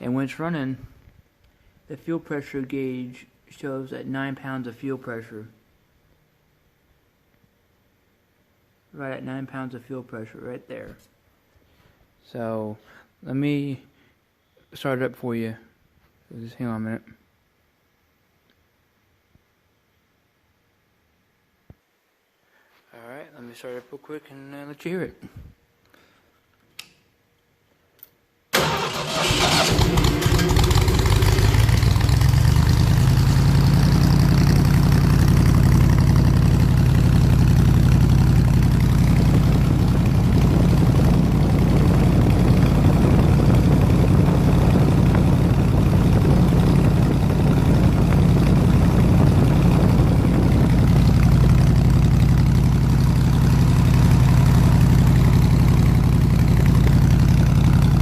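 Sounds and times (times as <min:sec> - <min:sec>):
engine starting and idling: 0:28.6 - 0:41.3.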